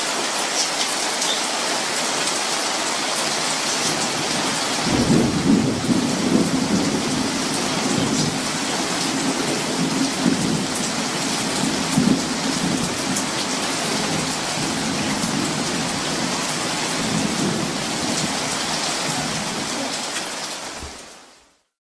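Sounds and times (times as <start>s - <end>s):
heavy rain falling: 0.0s - 21.6s
rolling thunder: 4.0s - 19.9s.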